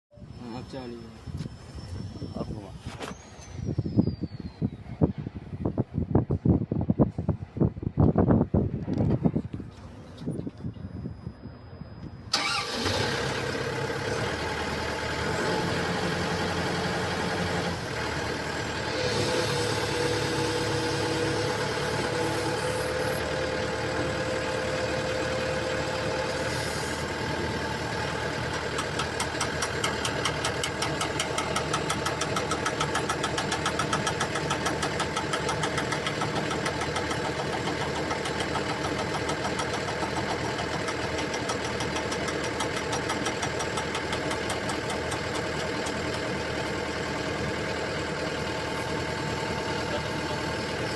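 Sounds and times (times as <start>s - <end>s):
excavator engine drone: 0.1s - 5.6s, 9.6s - 50.9s
rapid even ticking: 28.8s - 46.0s.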